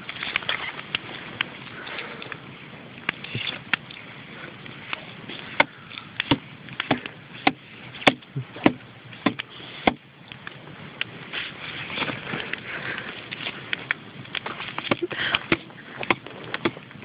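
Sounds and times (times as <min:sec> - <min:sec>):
knife chopping wood: 0:05.6 - 0:10.0, 0:14.8 - 0:16.8.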